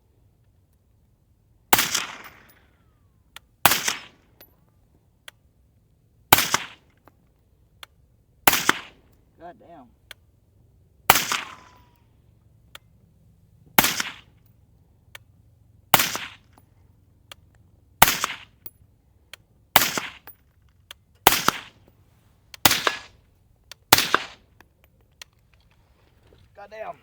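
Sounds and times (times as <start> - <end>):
rifle shots with echo: 1.7 - 2.7, 3.6 - 4.2, 6.3 - 6.8, 8.4 - 9.1, 11.1 - 12.0, 13.8 - 14.4, 15.9 - 16.4, 18.0 - 18.6, 19.8 - 20.3, 21.2 - 21.8, 22.6 - 23.2, 23.9 - 24.5.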